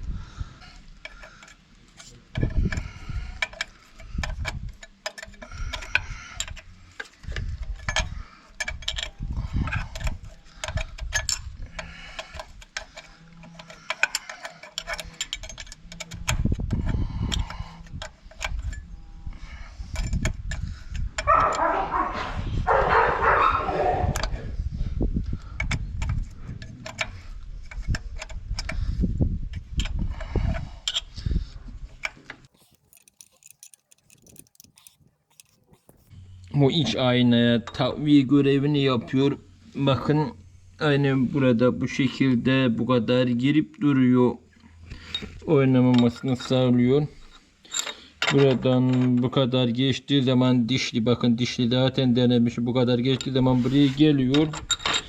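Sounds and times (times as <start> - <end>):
metal tools clinking: 1.0 - 16.4, 32.5 - 36.1, 47.3 - 48.6, 53.1 - 55.0.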